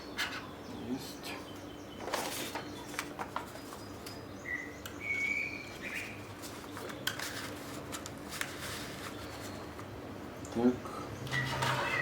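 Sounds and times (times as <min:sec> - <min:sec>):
bird chirping: 0:00.0 - 0:07.1, 0:11.1 - 0:12.0.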